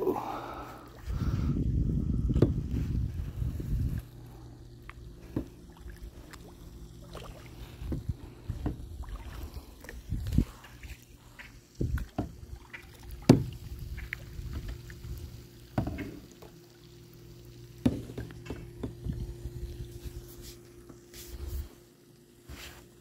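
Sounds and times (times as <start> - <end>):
low steady motor hum: 0.0 - 23.0
water washing along hull: 2.3 - 20.6
knocks against boat: 13.3 - 13.5.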